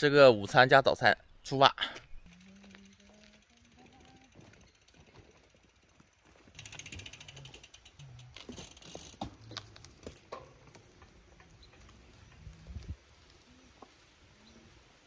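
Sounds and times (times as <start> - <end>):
bicycle freewheel ticking: 2.3 - 12.5.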